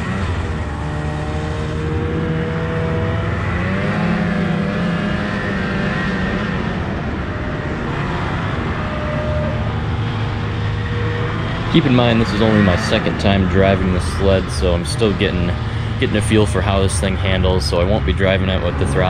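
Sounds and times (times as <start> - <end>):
snowmobile engine running: 0.0 - 19.0.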